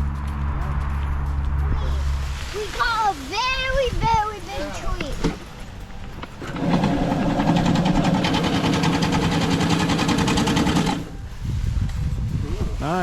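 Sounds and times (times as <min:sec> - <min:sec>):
motor-driven machine rattling: 0:06.2 - 0:11.2.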